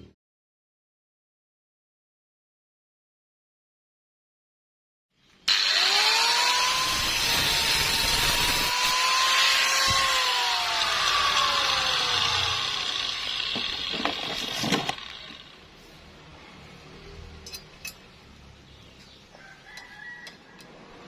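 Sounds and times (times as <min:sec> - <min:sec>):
power tool motor whine: 0:05.5 - 0:15.6.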